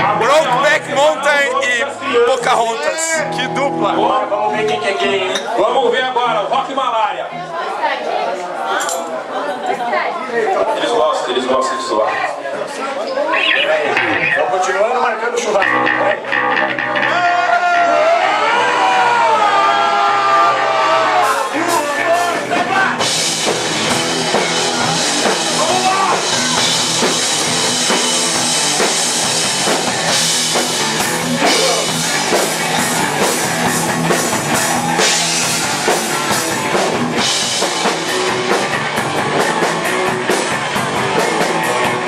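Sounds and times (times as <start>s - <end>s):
live rock band playing: 0.0s - 5.2s, 13.1s - 18.0s, 20.6s - 42.0s
drum kit and cymbals: 21.2s - 42.0s.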